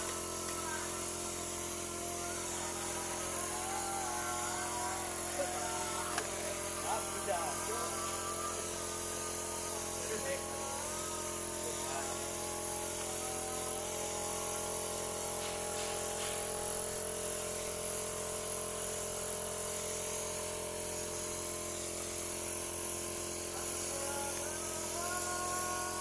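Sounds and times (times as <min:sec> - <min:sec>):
small motor whining and humming: 0:00.0 - 0:26.0
high hiss: 0:01.9 - 0:19.0, 0:23.1 - 0:26.0.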